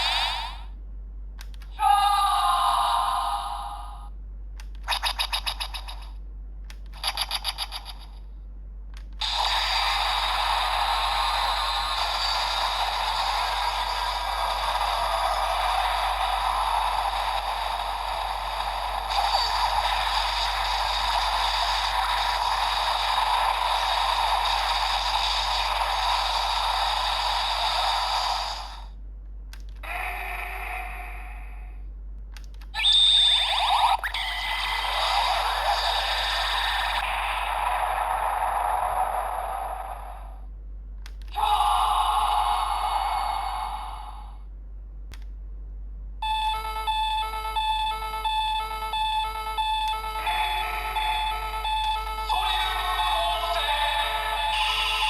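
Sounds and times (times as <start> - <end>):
loud sustained sound effect: 9.2 - 28.9, 33.6 - 40.4, 50.3 - 55.0
shimmering electronic hiss with tones: 9.2 - 28.9, 52.3 - 55.0
pulsing electronic chime: 46.3 - 55.0.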